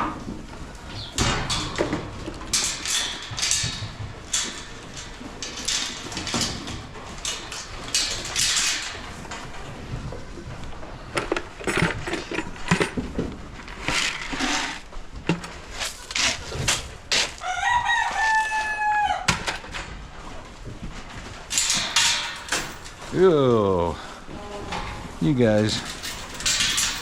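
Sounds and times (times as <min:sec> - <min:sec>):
rooster crowing: 0:17.4 - 0:19.3.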